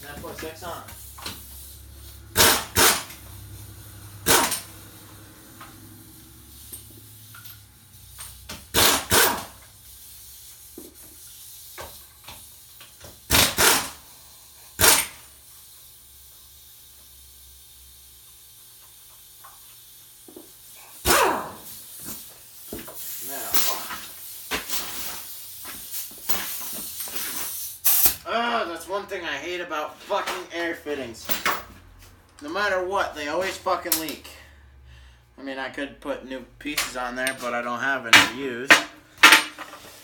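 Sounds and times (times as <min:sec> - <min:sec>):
pneumatic air tool hissing bursts: 0:00.8 - 0:28.2.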